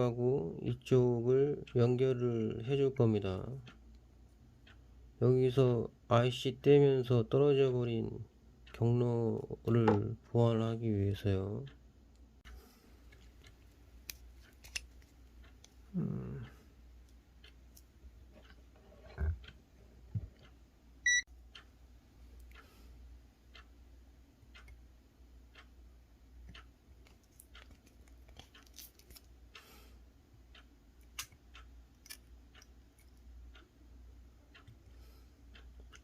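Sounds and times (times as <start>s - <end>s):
short electronic beep: 21.0s - 21.2s.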